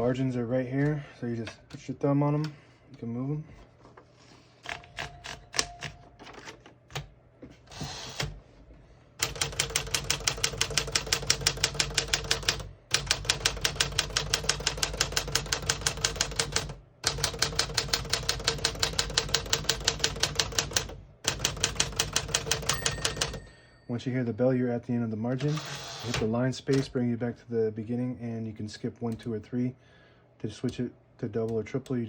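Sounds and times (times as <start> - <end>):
typewriter keystrokes: 4.7 - 7.1, 9.2 - 23.4.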